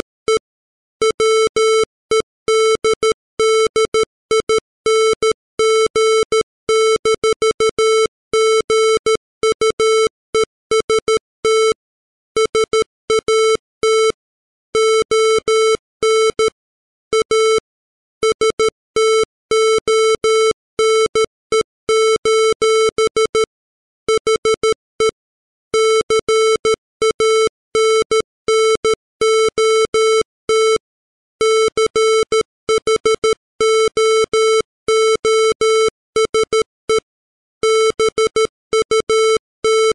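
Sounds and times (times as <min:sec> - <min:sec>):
morse code tone: 0:37.6 - 0:39.9.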